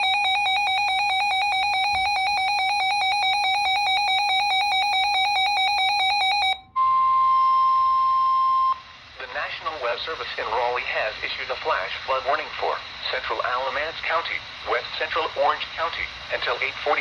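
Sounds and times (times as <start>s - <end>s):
rapidly pulsing electronic beep: 0.0s - 8.8s
steady single-pitched alarm tone: 0.0s - 8.8s.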